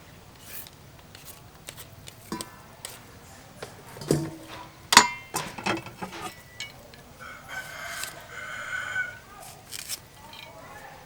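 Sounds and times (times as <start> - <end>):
rooster crowing: 7.0 - 9.4.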